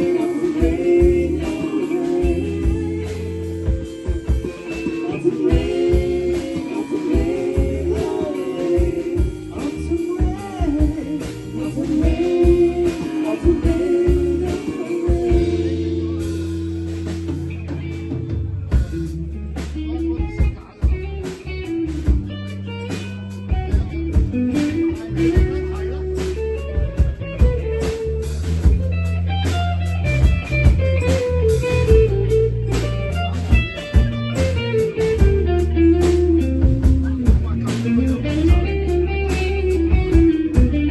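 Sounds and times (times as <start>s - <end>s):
person singing: 0.0s - 17.3s
bass guitar: 0.0s - 40.9s
drums: 0.0s - 40.9s
electric guitar: 0.0s - 40.9s.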